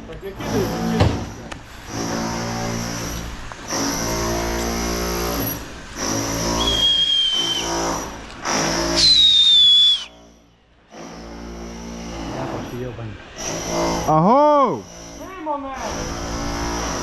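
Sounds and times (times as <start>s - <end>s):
motor-driven machine running: 0.0s - 17.0s
high squeal: 6.4s - 8.2s, 8.8s - 10.3s.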